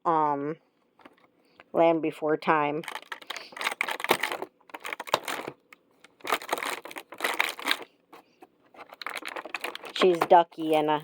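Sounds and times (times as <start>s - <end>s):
packaging crinkling and tearing: 2.8s - 7.9s, 8.8s - 10.4s.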